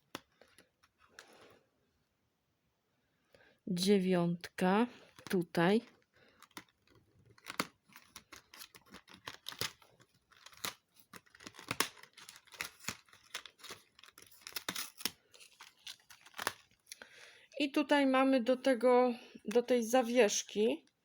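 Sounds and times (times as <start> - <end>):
paper crackling and crinkling: 5.0 - 16.9
cardboard being torn open: 7.3 - 16.6.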